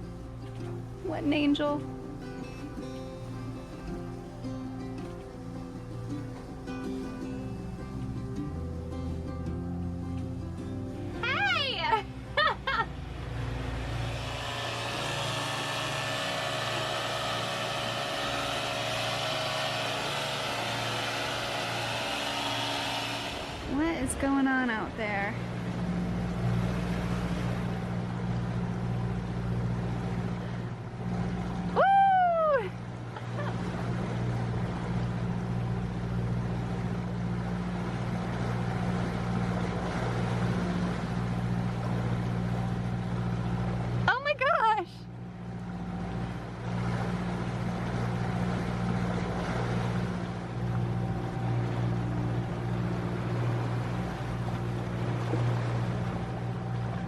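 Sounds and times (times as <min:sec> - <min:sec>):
diesel engine humming: 0:00.0 - 0:57.0
wind: 0:00.0 - 0:57.0
water hissing: 0:13.4 - 0:24.3.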